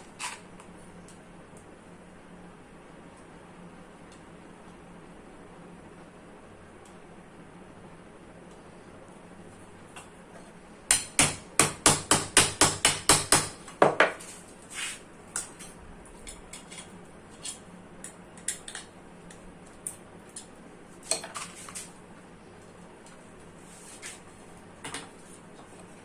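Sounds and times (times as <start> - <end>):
sharp metal knocks: 10.9 - 14.1.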